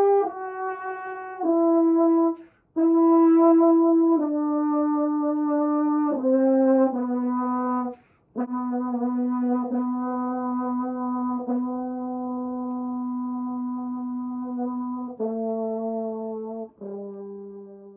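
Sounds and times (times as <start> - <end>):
french horn notes: 0.0 - 17.9
breath: 2.4 - 2.8, 7.9 - 8.4.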